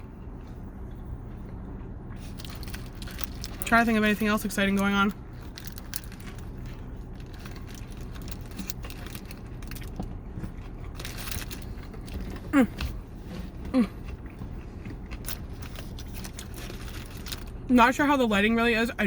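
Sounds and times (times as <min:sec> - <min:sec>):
chewing and eating: 0:00.0 - 0:17.7
steady low hum: 0:00.0 - 0:19.0.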